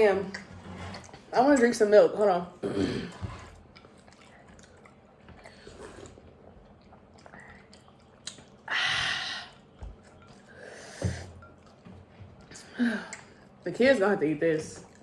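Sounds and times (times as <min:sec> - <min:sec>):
chewing and mouth noises: 0:03.4 - 0:08.7, 0:09.4 - 0:13.6, 0:14.8 - 0:15.0.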